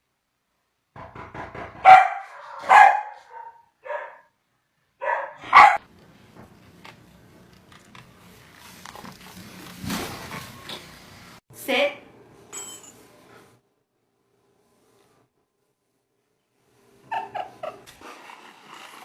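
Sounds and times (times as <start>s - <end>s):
dog barking: 1.8s - 4.4s, 5.0s - 5.8s.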